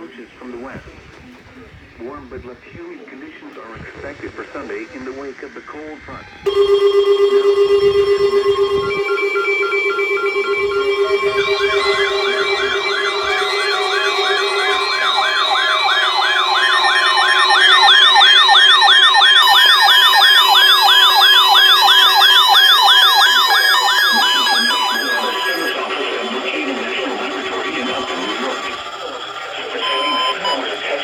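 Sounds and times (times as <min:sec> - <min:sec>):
steady electronic tones: 0:03.8 - 0:31.0
electronic alarm rising sweep: 0:06.4 - 0:31.0.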